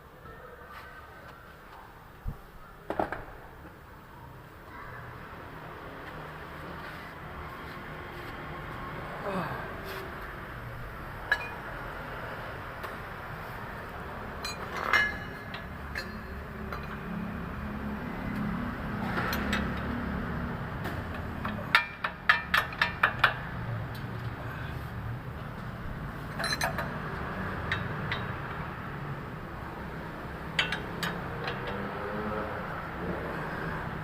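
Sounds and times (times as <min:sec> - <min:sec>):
metal tools tapping on steel: 0:11.3 - 0:11.7, 0:14.4 - 0:17.2, 0:21.1 - 0:23.5, 0:26.3 - 0:28.7, 0:30.5 - 0:31.9.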